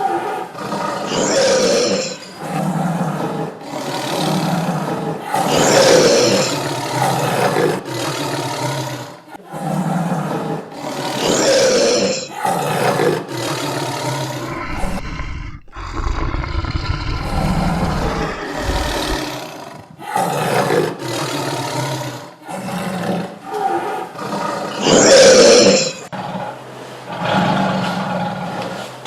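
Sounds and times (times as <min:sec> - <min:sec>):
tiger roaring and growling: 0:00.0 - 0:29.0
deep low rumble: 0:14.5 - 0:19.2.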